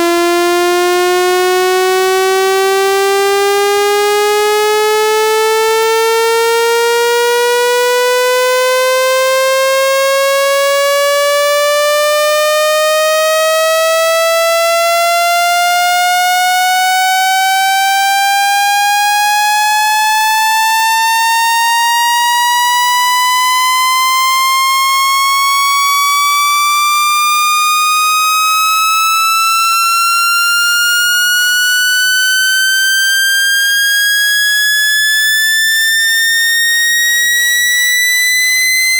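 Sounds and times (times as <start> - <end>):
buzzy rising test tone: 29.7 - 38.9.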